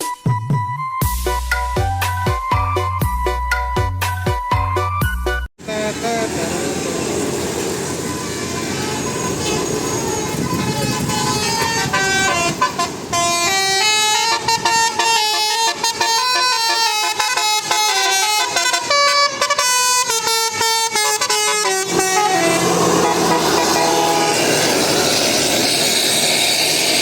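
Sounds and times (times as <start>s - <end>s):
steady vehicle noise: 5.5s - 27.0s
musical air horn melody: 8.1s - 25.4s.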